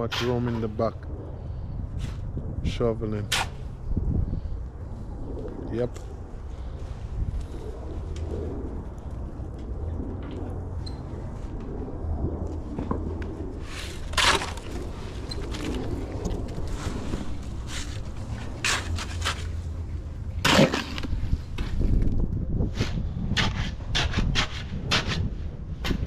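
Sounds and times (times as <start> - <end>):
shovel scraping dirt: 0.0 - 0.8, 3.2 - 3.7, 13.6 - 19.8, 20.4 - 21.8, 22.7 - 25.3.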